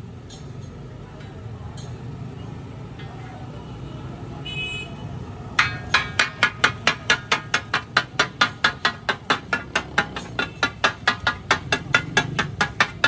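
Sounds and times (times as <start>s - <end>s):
metal spatula striking griddle: 5.6s - 13.0s.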